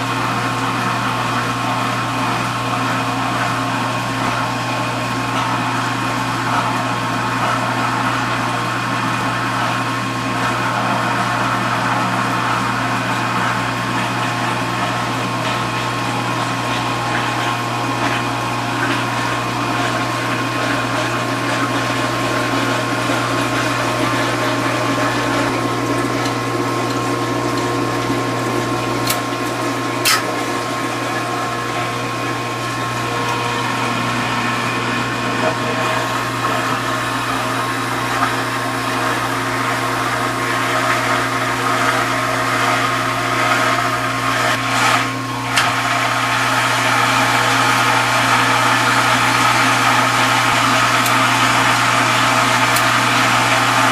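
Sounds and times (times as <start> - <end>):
dishwasher motor hum: 0.0 - 53.9
water spraying and splashing: 24.6 - 31.3.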